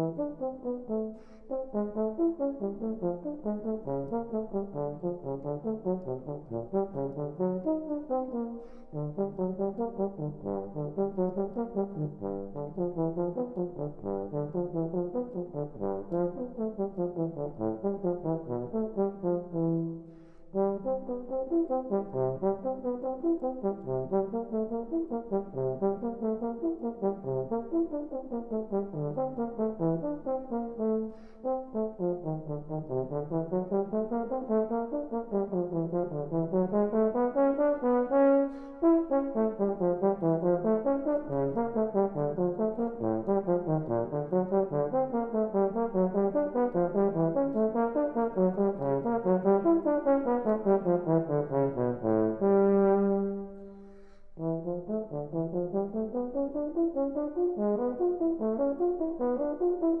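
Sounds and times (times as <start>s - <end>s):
brass-like rapid scales: 34.4s - 60.0s.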